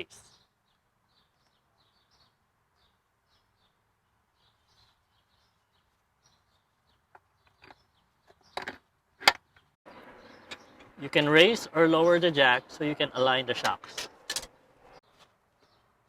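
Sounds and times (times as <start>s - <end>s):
tool clicks and knocks: 13.6s - 14.5s.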